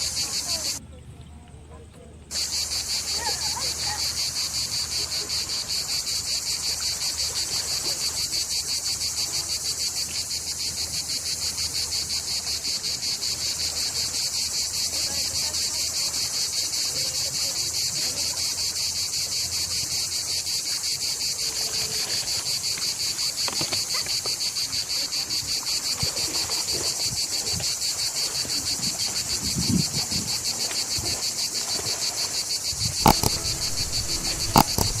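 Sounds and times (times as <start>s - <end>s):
crickets chirping: 0.0s - 0.8s, 2.3s - 35.0s
sharp click: 33.0s - 35.0s.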